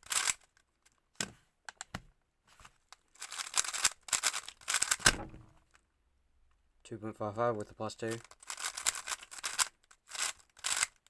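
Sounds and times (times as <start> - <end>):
speed cube layers clicking: 0.0 - 0.5, 3.2 - 5.0, 8.1 - 11.0.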